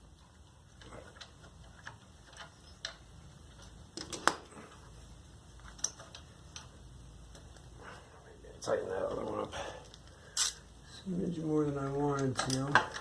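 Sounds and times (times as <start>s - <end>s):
hand tool and metal parts clicking: 0.2s - 4.4s, 5.6s - 6.7s, 12.1s - 13.0s.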